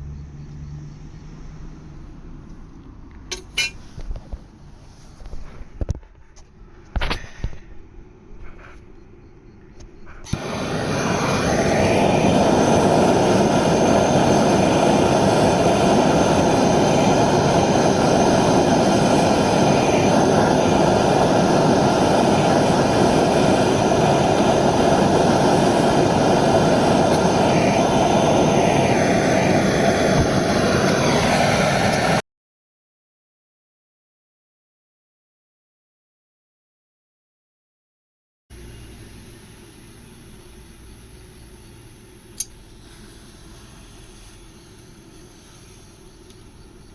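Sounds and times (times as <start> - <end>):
gas torch flame hissing: 10.1 - 32.2, 38.5 - 46.9.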